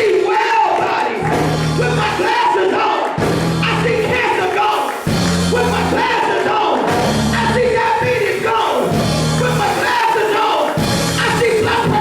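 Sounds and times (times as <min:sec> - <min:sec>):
gospel band music: 0:00.0 - 0:12.0
people singing or shouting: 0:00.0 - 0:12.0
held bass notes: 0:01.2 - 0:02.3, 0:03.2 - 0:06.2, 0:06.9 - 0:10.0, 0:10.8 - 0:12.0.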